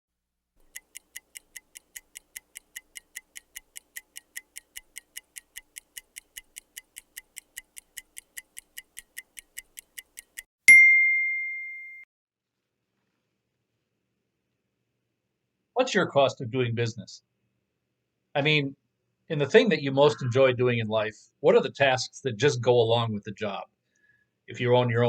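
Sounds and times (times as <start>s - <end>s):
microwave timer ticking: 0.6s - 10.5s
bell ding: 10.7s - 12.1s.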